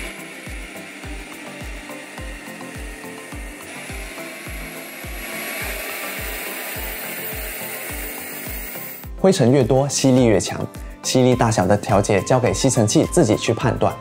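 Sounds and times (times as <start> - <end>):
vacuum cleaner motor whine: 0.0 - 9.2
music with kick-drum beat: 0.0 - 14.0.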